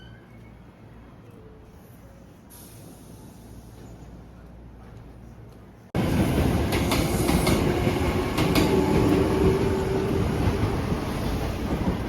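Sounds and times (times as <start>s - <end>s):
train wheels rumbling on rails: 2.9s - 12.0s.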